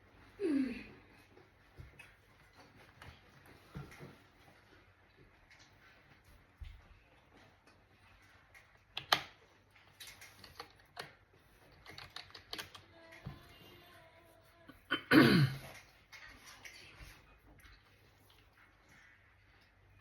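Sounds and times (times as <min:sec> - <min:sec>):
laptop keys tapping: 0:11.8 - 0:13.3
person clearing throat: 0:14.8 - 0:15.8.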